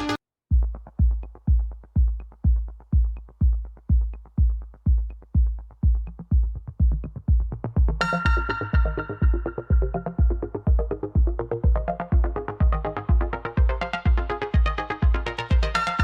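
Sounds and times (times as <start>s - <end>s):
electronic music kick drum beat: 0.0s - 16.0s
bright synthesizer chord: 8.0s - 10.5s.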